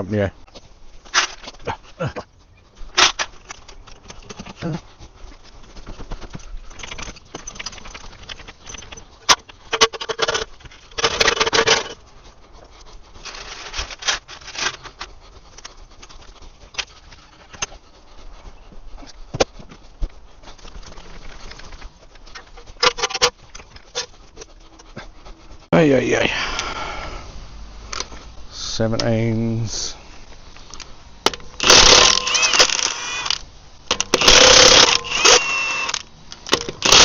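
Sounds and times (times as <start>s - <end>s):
rain hiss: 25.8s - 31.2s.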